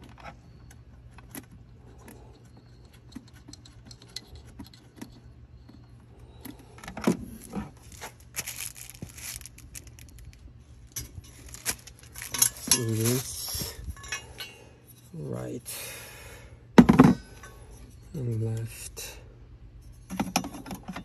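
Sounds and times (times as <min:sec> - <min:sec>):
rustling: 0:07.2 - 0:13.9
cable connectors clicking and rattling: 0:07.4 - 0:13.4.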